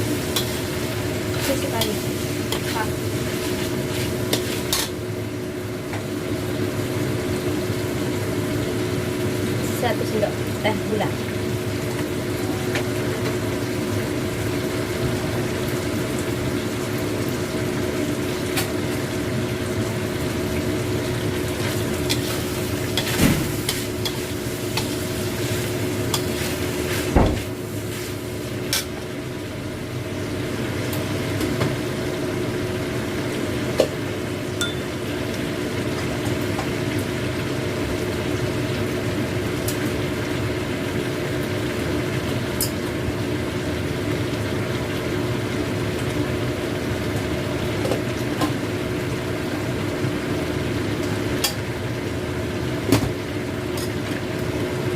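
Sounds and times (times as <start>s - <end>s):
food sizzling in a pan: 0.0s - 54.9s.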